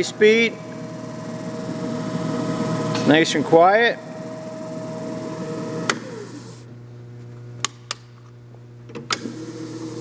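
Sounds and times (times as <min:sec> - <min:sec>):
lathe motor hum: 0:00.0 - 0:06.7, 0:09.2 - 0:10.0.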